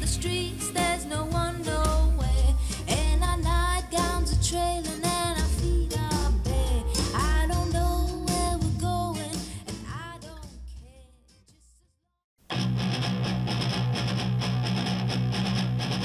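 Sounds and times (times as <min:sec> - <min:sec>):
rock music with electric guitar: 0:00.0 - 0:03.4, 0:12.5 - 0:16.0.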